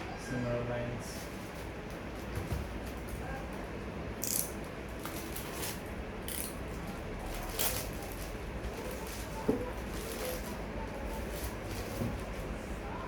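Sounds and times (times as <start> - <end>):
plastic scraping and rustling: 5.0 - 6.0, 6.7 - 12.6.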